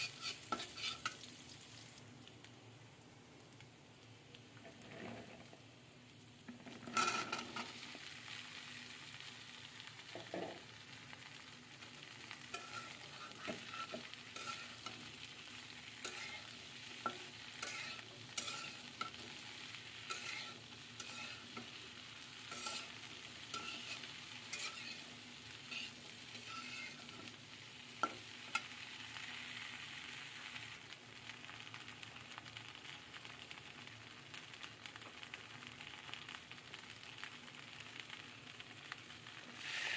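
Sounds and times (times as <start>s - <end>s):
spatula scraping a pan: 0.0s - 1.3s, 6.9s - 7.8s, 12.3s - 27.4s, 39.6s - 39.9s
food sizzling in oil: 0.0s - 39.9s.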